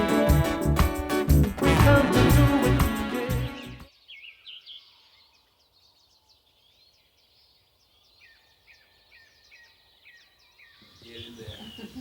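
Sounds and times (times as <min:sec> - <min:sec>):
faint bird chirps: 0:03.9 - 0:12.0.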